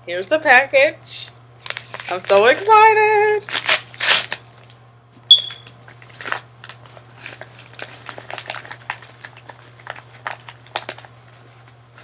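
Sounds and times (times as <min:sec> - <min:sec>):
packaging crinkling and crackling: 0:01.6 - 0:02.7, 0:03.5 - 0:04.8, 0:05.6 - 0:12.0
packaging snap: 0:03.5 - 0:11.1.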